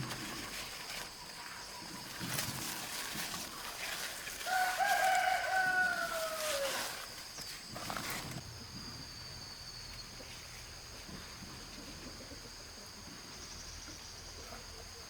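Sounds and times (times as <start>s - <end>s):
rooster crowing: 4.4s - 7.0s.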